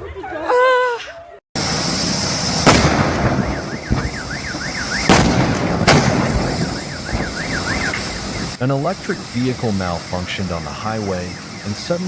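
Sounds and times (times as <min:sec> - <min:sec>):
sharp bangs: 0:01.6 - 0:12.0
steady hiss: 0:01.6 - 0:12.0
car alarm warbling: 0:03.2 - 0:05.2, 0:06.2 - 0:08.6, 0:09.4 - 0:12.0.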